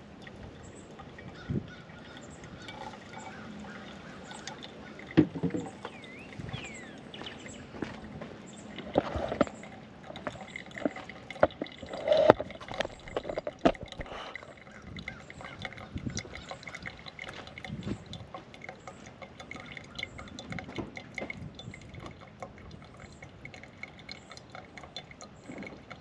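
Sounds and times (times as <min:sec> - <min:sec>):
liquid pouring: 0:00.0 - 0:26.0
coffee gear clinking and knocking: 0:05.1 - 0:06.0, 0:08.8 - 0:14.4.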